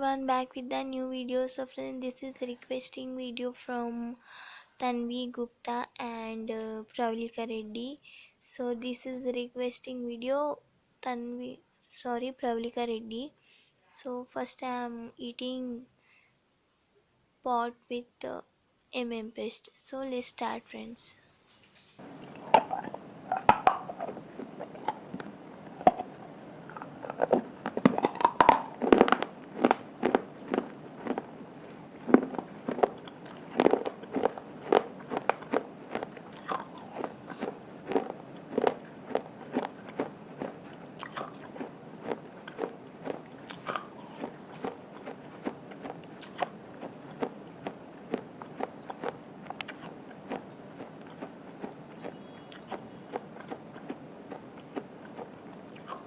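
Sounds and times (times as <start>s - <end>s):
chewing: 22.0s - 56.0s
crunching bites: 22.0s - 56.0s.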